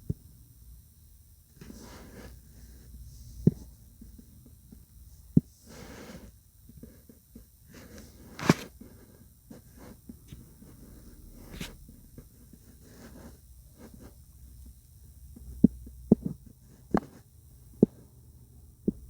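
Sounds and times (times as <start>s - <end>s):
soft rubbing and rustling: 1.6s - 14.3s.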